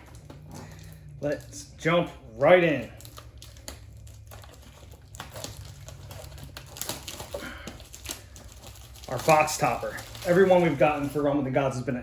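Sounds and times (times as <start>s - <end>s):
packaging crinkling: 0.0s - 11.9s.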